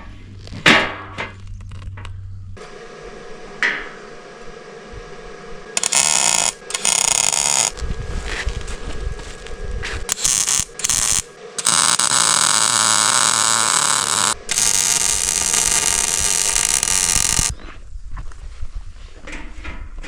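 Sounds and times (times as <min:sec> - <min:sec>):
welding arc crackling and buzzing: 0:05.7 - 0:17.6.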